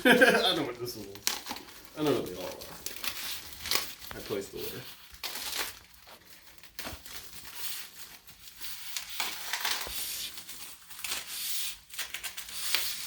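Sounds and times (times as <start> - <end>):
plastic wrap crinkling: 0.0 - 13.0
packaging being cut: 5.1 - 13.0.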